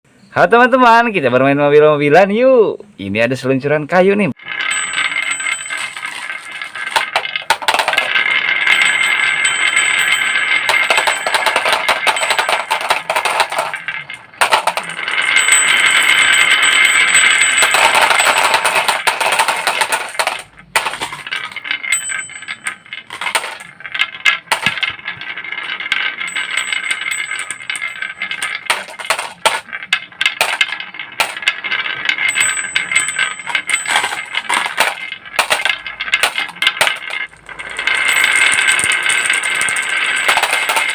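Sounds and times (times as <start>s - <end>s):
toys rolling down wooden slide: 4.4s - 40.9s
toys bumping and landing: 5.6s - 8.2s, 9.6s - 15.7s, 16.4s - 25.4s, 27.4s - 31.6s, 32.3s - 40.9s.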